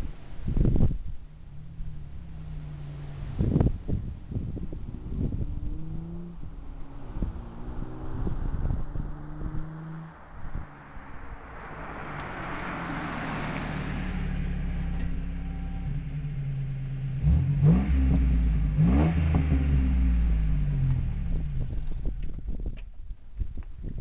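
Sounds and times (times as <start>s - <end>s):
car engine and exhaust: 0.0s - 24.0s
engine revving: 4.9s - 21.8s.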